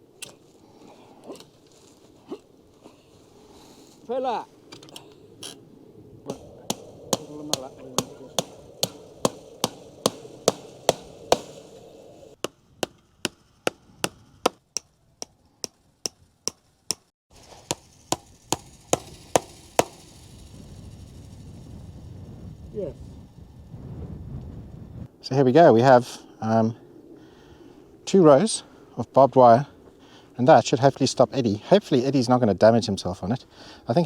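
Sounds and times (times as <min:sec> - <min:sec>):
hammer striking: 0:06.3 - 0:20.1.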